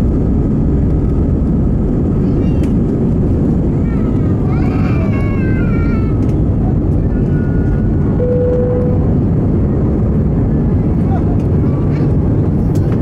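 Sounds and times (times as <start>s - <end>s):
jet engines roaring in cabin: 0.0s - 13.0s
short steady tone: 8.2s - 9.1s.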